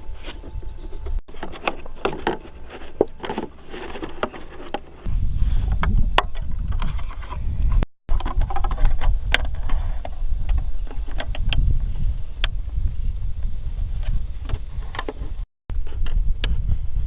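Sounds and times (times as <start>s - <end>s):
sharp clicks and rustles: 0.0s - 5.1s
low rumble: 5.1s - 7.8s.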